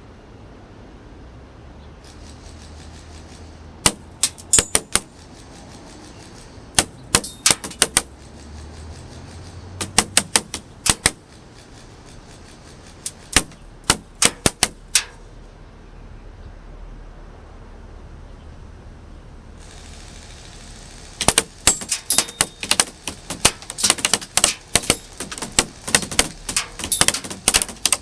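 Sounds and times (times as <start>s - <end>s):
airsoft gun firing shots: 3.8s - 8.2s, 9.8s - 11.6s, 12.9s - 15.2s, 21.2s - 28.0s.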